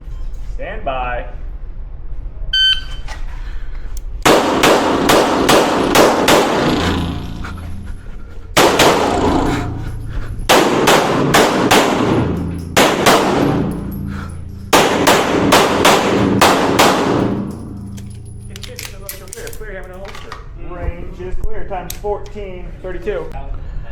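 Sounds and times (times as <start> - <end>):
pistol shots echoing indoors: 4.2 - 7.8, 8.6 - 19.2.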